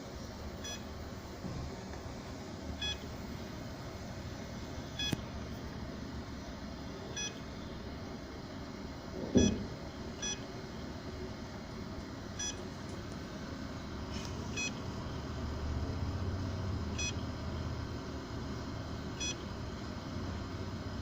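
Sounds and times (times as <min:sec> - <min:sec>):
hard drive short beeps: 0:00.6 - 0:00.9, 0:02.8 - 0:03.1, 0:04.9 - 0:05.2, 0:07.1 - 0:07.5, 0:09.4 - 0:10.5, 0:12.4 - 0:12.6, 0:14.5 - 0:14.8, 0:16.9 - 0:17.2, 0:19.2 - 0:19.4.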